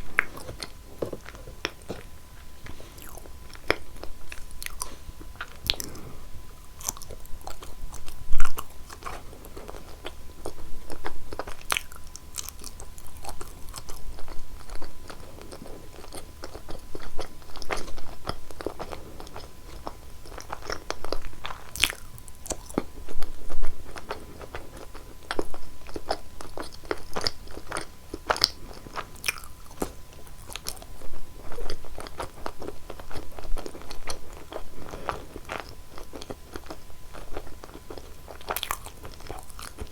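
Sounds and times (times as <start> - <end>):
person chewing crunchy food: 0.0 - 39.9.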